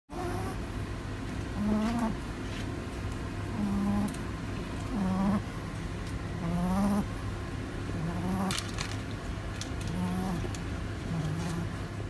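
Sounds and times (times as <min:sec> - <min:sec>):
dog snoring: 0:01.6 - 0:02.2, 0:03.5 - 0:04.1, 0:04.9 - 0:05.4, 0:06.4 - 0:07.1, 0:07.9 - 0:08.5, 0:09.9 - 0:11.7.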